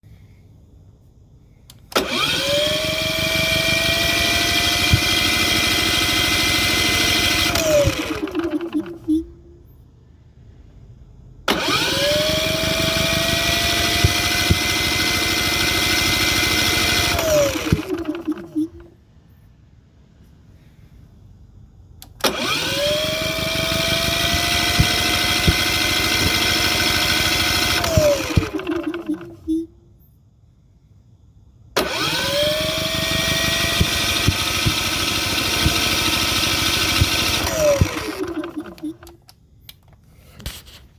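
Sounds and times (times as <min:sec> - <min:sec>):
generator starter cranking engine: 0:01.7 - 0:09.5, 0:11.4 - 0:19.0, 0:21.9 - 0:29.8, 0:31.7 - 0:40.6.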